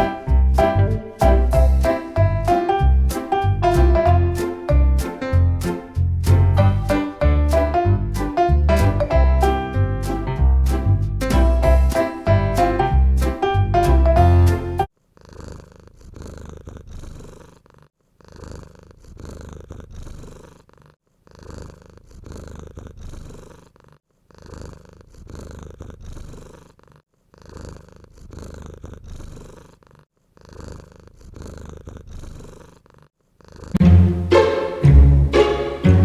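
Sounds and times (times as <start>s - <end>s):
cat purring: 0.0s - 4.7s, 10.6s - 33.8s.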